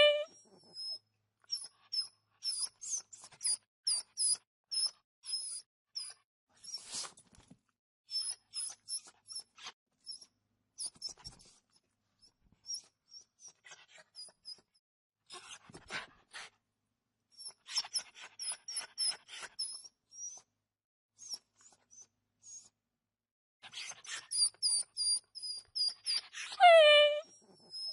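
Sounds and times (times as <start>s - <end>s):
small animal squeaking: 0.0s - 6.9s, 8.1s - 11.5s, 23.7s - 27.9s.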